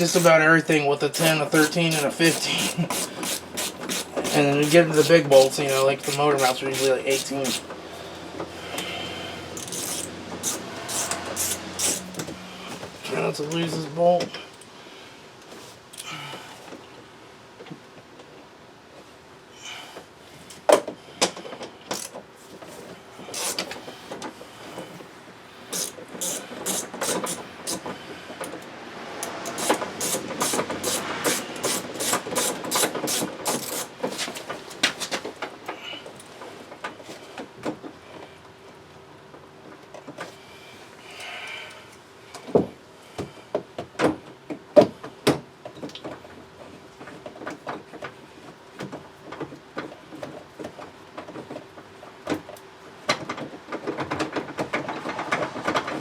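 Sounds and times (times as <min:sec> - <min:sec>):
socket ratchet clicking: 0:09.6 - 0:12.3, 0:25.7 - 0:27.8, 0:29.4 - 0:33.9.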